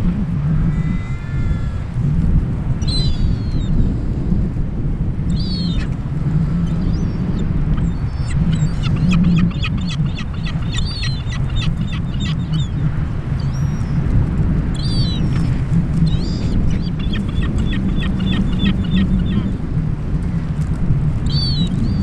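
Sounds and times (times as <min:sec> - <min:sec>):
wind rumble on microphone: 0:00.0 - 0:22.0
seagull calling: 0:00.5 - 0:02.0, 0:02.8 - 0:03.9, 0:05.3 - 0:14.1, 0:14.8 - 0:19.7.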